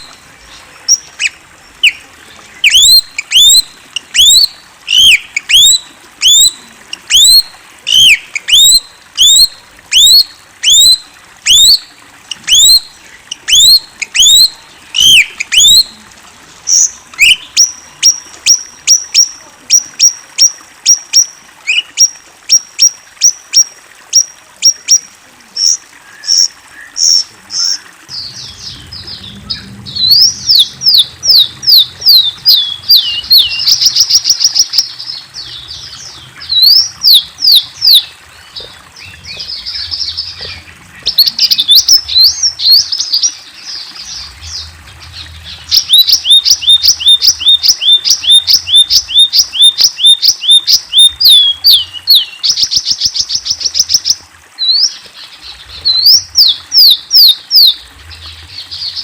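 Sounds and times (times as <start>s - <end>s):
songbird singing high whistles: 13.5s - 15.9s, 45.7s - 52.8s.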